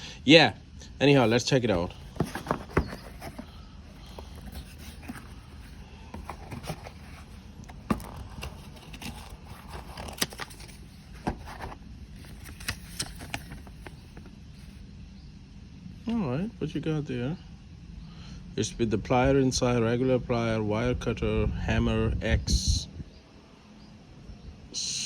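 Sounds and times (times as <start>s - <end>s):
low background hum: 0.0s - 25.0s
packaging clicks and taps: 2.0s - 14.3s.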